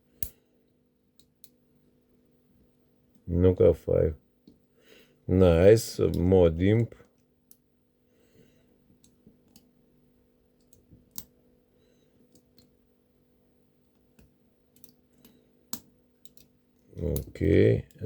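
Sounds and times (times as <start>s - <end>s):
faint steady hum: 0.0s - 18.0s
lock pick clicking: 15.7s - 16.5s.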